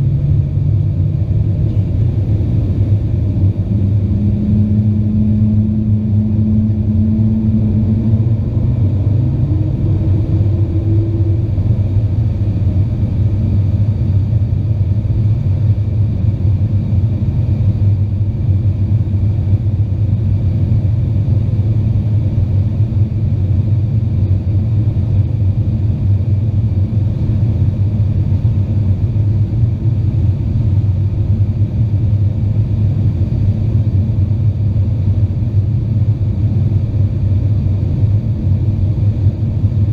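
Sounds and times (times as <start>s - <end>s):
humming tone: 0.0s - 13.5s
airliner cabin rumble: 0.0s - 39.9s.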